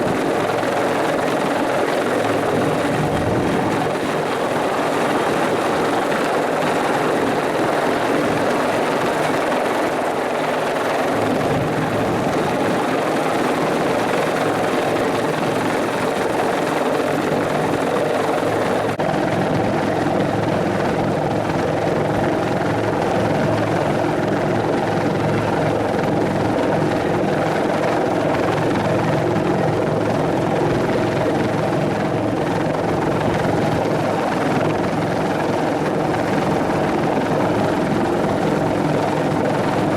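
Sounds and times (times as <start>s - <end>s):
helicopter rotor and turbine noise: 0.0s - 39.9s.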